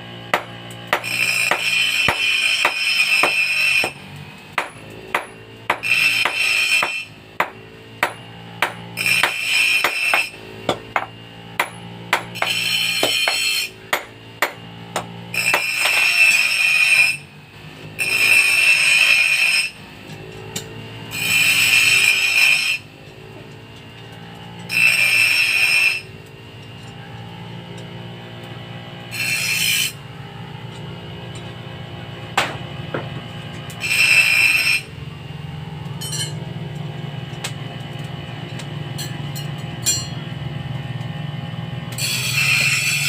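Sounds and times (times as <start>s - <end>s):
file rasping on metal: 0.3s - 4.0s, 4.6s - 17.3s, 18.0s - 19.8s, 21.1s - 22.9s, 24.7s - 26.1s, 29.1s - 30.0s, 33.8s - 34.9s, 41.9s - 43.0s
hammer ringing on steel anvil: 36.0s - 36.4s, 39.0s - 40.2s.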